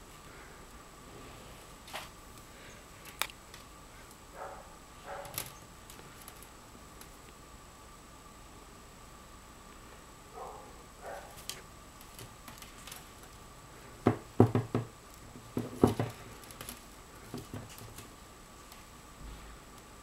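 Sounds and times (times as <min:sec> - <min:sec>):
sharp knocks and taps: 0:14.0 - 0:14.9.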